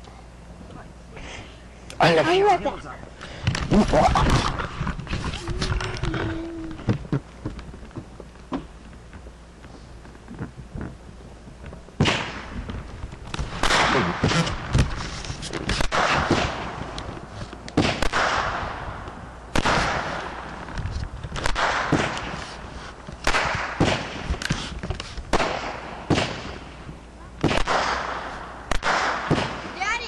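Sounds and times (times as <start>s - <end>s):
fireworks hissing trails: 9.6s - 30.0s
fireworks bangs and crackles: 10.4s - 30.0s.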